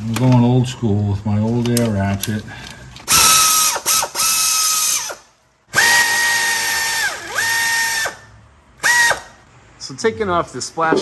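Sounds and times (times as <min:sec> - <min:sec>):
pneumatic air ratchet whining: 0:03.0 - 0:09.4.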